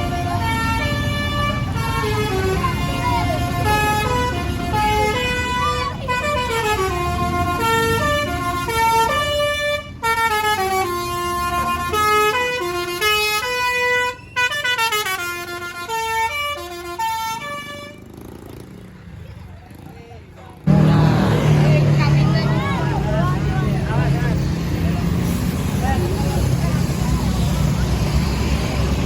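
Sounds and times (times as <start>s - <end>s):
bus horn playing a melody: 0.0s - 18.1s.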